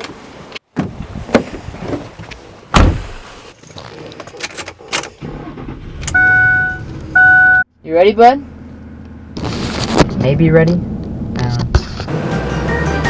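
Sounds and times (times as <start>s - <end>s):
car door shutting: 2.7s - 3.2s.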